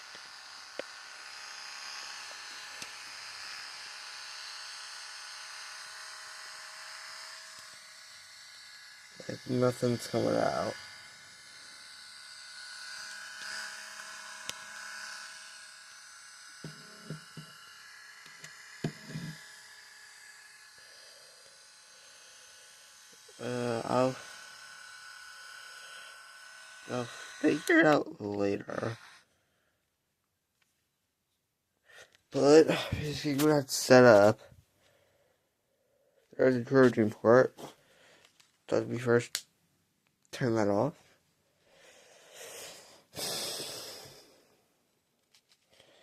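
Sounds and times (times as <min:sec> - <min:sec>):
small motor whirring: 0:00.0 - 0:29.8, 0:40.6 - 0:44.6.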